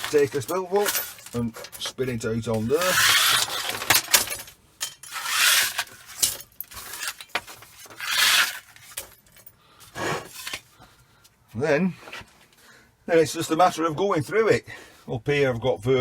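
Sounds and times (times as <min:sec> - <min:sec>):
scrap metal jangling on steel: 0:00.0 - 0:10.6.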